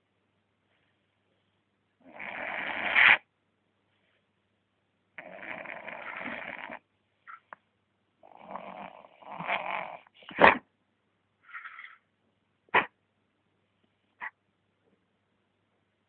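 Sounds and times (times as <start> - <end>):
dog snoring: 2.0 - 3.2, 5.2 - 6.8, 8.2 - 10.3
dog snorting: 5.2 - 6.8.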